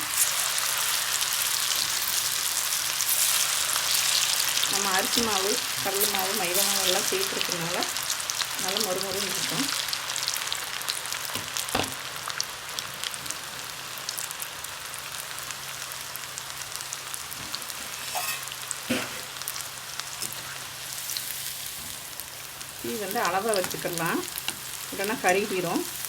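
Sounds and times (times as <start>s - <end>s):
food sizzling in hot oil: 0.0s - 26.0s.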